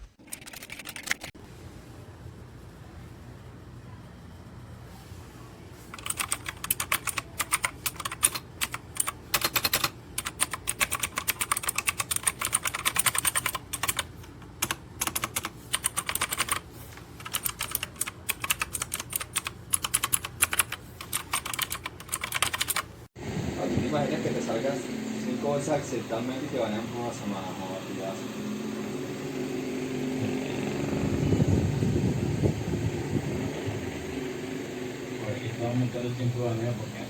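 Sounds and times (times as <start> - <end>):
mechanical keyboard typing: 0.0 - 1.4, 5.9 - 22.9.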